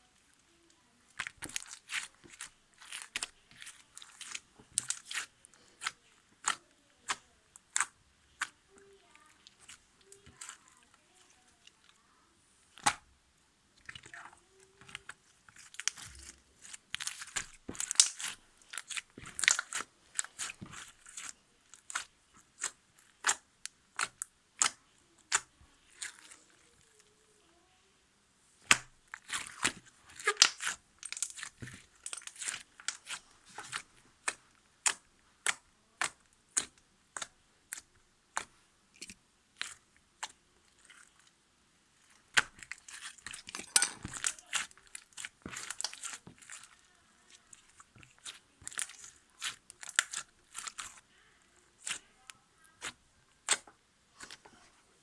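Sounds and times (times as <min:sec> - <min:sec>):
slime crackling and popping: 0:13.8 - 0:26.4, 0:28.6 - 0:41.1, 0:42.2 - 0:51.0, 0:51.8 - 0:52.1, 0:52.7 - 0:54.5.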